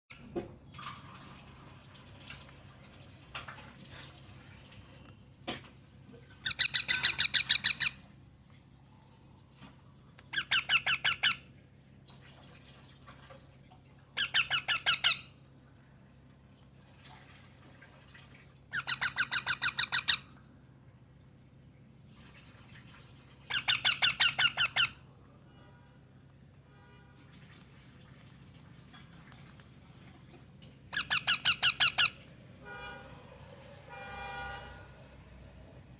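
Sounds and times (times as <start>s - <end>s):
parrots giving shrill squeaky calls: 6.4s - 8.0s, 10.3s - 11.5s, 14.2s - 15.3s, 18.7s - 20.3s, 23.5s - 25.0s, 30.9s - 32.2s.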